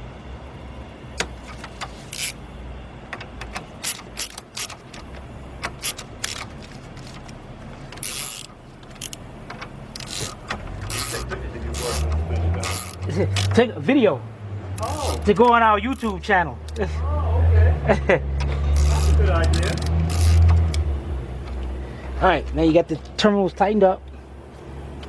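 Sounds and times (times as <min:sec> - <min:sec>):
socket ratchet clicking: 0:03.2 - 0:13.6, 0:18.4 - 0:21.8.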